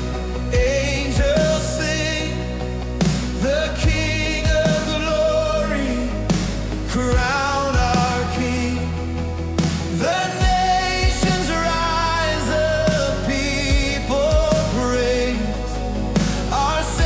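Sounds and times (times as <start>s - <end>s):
sustained bass: 0.0s - 17.0s
person singing with vibrato: 0.4s - 17.0s
kick drum beats: 3.8s - 4.6s.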